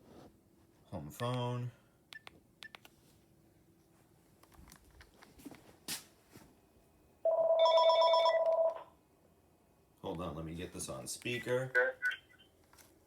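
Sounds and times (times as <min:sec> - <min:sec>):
electronic phone ringing: 0:07.3 - 0:08.9.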